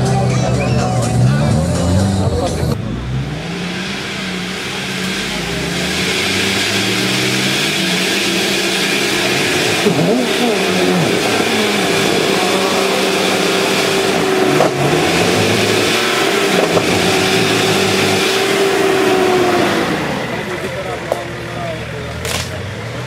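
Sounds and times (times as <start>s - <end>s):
engine running under load: 0.0s - 23.0s.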